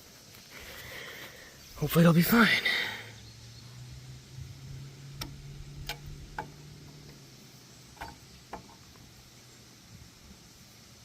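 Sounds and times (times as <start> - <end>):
sharp clicks: 5.2 - 7.2.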